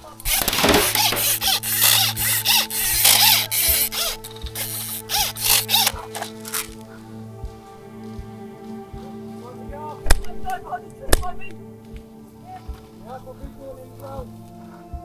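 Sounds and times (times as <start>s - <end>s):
background music with low notes: 0.0s - 15.0s.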